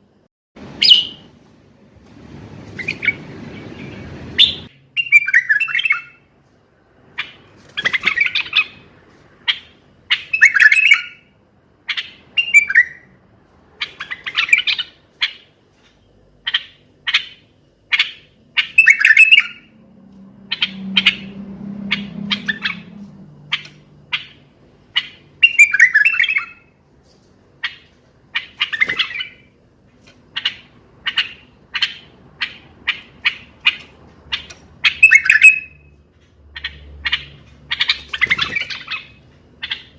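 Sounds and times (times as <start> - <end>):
bulbul singing: 2.8 - 6.3, 9.5 - 13.1, 16.4 - 26.8, 30.3 - 39.9.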